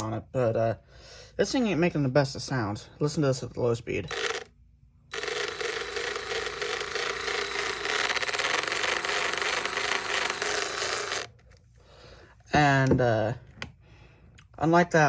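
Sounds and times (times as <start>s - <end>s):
impact driver running unloaded: 4.0s - 4.5s, 5.1s - 11.6s.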